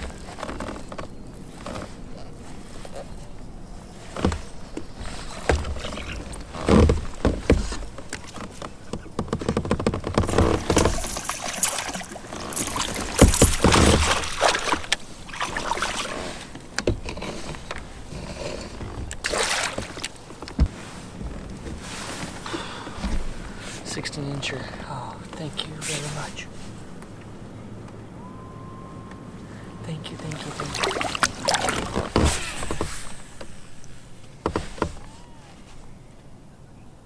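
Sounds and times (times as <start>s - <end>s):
knocks and clatter on kayak: 0.0s - 3.2s, 3.9s - 23.5s, 30.5s - 35.3s
rustling water-like noise: 0.0s - 28.1s, 29.4s - 36.3s.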